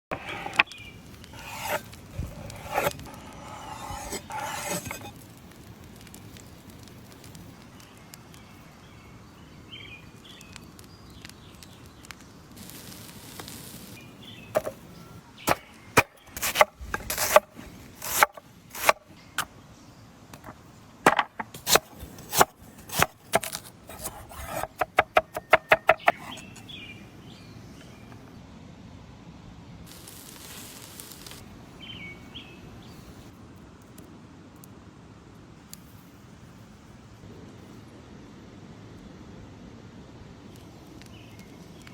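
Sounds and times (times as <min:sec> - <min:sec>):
knife rubbing and scraping: 0:00.1 - 0:00.7, 0:01.3 - 0:05.2, 0:14.6 - 0:14.8, 0:16.3 - 0:19.0, 0:21.1 - 0:26.6
knife chopping on wooden board: 0:01.4 - 0:05.1, 0:14.6 - 0:14.8, 0:15.5 - 0:19.0, 0:21.1 - 0:26.6.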